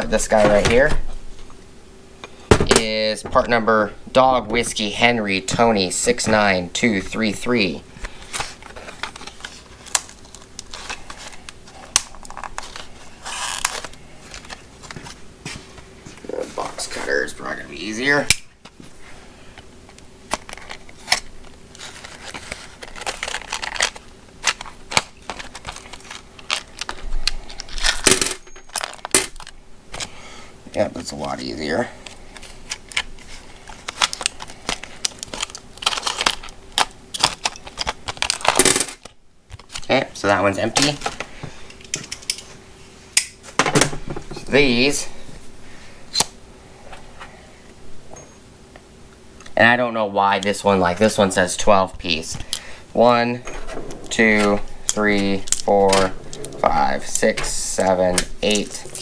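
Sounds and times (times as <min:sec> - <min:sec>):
packaging crinkling and crackling: 0:08.0 - 0:15.2, 0:20.2 - 0:28.1, 0:28.7 - 0:30.1, 0:32.0 - 0:40.0, 0:54.0 - 0:59.0
packaging tearing: 0:08.3 - 0:14.6, 0:20.3 - 0:28.1, 0:32.6 - 0:39.1.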